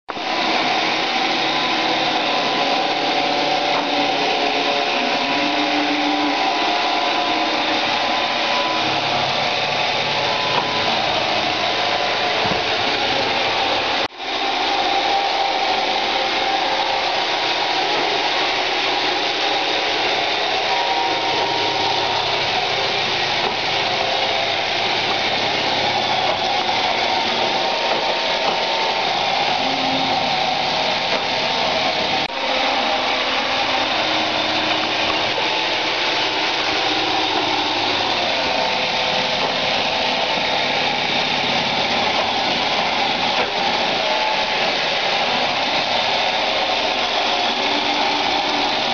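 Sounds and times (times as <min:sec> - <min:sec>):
robot vacuum whirring: 0:00.1 - 0:48.9.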